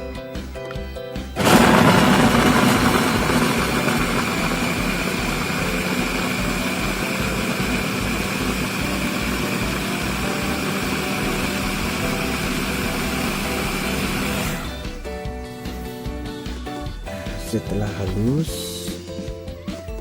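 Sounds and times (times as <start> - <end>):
electric blender running: 1.4 - 15.0.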